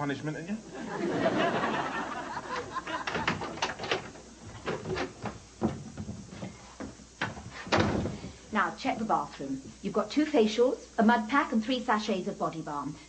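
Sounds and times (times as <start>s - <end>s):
household knocks and clicks: 3.0s - 8.3s.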